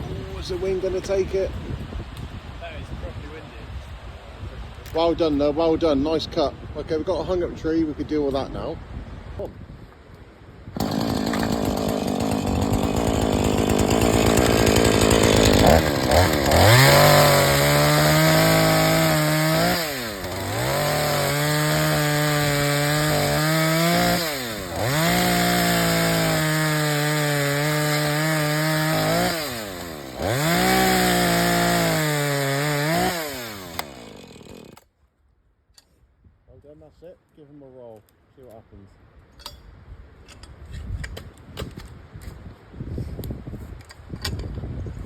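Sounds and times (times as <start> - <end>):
chainsaw cutting at high revs: 10.8 - 34.8.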